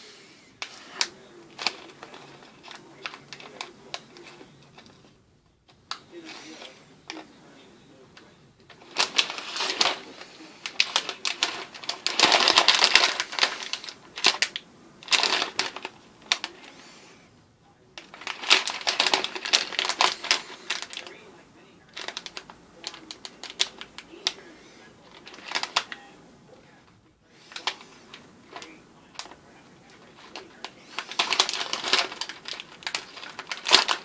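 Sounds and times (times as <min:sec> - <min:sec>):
plastic pieces clicking and rattling: 0:10.6 - 0:16.6, 0:18.0 - 0:21.1, 0:30.1 - 0:34.0.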